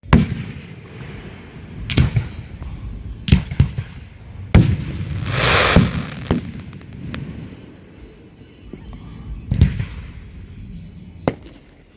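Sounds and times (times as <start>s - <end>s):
crackling hiss of fireworks: 0.1s - 11.7s
fireworks shells booming: 4.6s - 7.3s.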